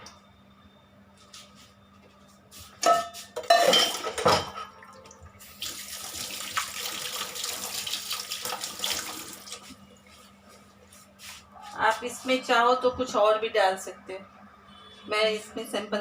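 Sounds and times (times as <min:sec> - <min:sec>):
utensils and dishes clattering: 0:02.8 - 0:04.8.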